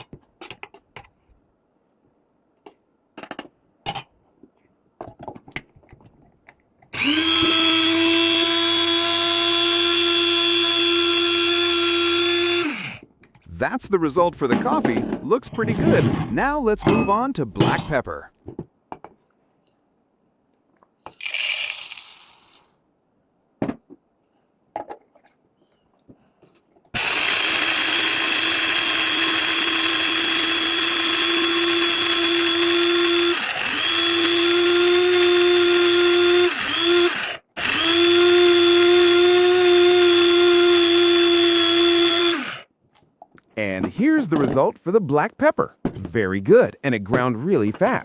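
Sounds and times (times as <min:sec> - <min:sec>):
spice grinder motor whining: 0:07.0 - 0:13.0, 0:27.0 - 0:42.7.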